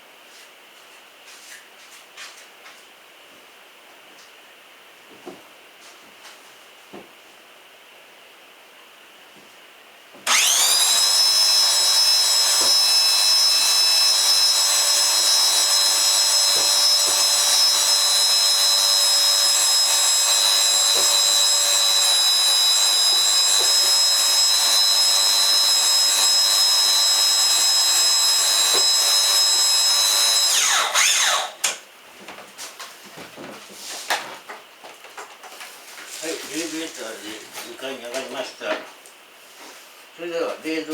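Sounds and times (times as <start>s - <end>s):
electric winch motor whining: 10.3s - 31.8s.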